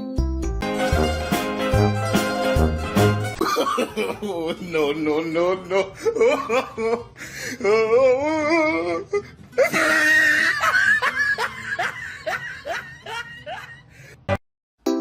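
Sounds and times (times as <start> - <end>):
person laughing hard: 3.4 - 4.9, 5.6 - 14.0.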